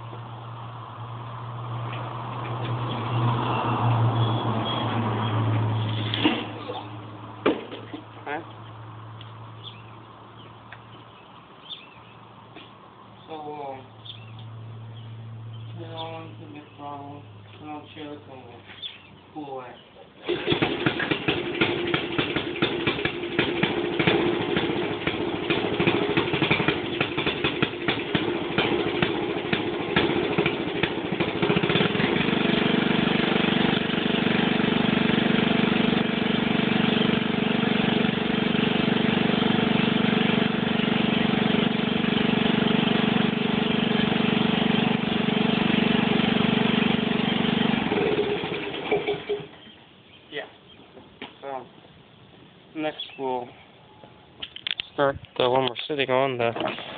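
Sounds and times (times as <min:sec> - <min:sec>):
small engine starting and running: 0:20.2 - 0:49.8.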